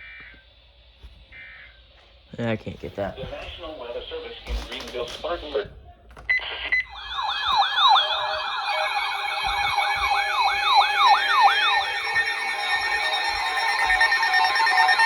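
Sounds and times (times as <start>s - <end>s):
electronic siren alarms wailing: 0.0s - 5.6s, 6.2s - 15.0s
steady alert tones: 6.8s - 15.0s.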